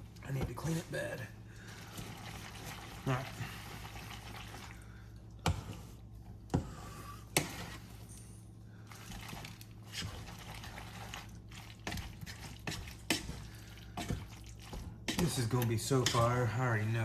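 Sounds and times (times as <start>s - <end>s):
utensil stirring sticky pasta: 0.0s - 8.1s, 8.7s - 17.0s
utensil clacking against pan: 14.0s - 16.4s.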